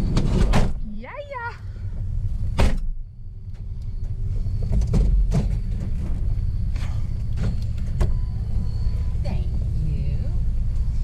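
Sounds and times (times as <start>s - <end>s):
van engine and road noise: 0.0s - 11.0s.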